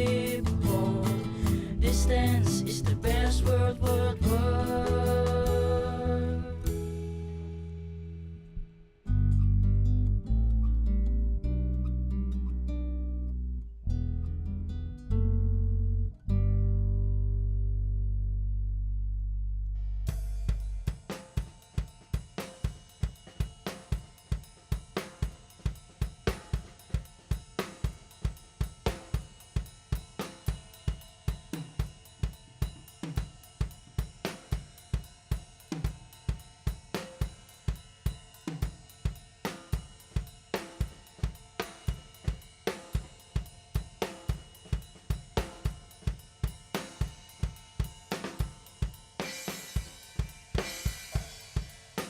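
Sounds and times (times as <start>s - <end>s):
drum kit playing steady beat: 0.0s - 7.2s, 20.1s - 52.0s.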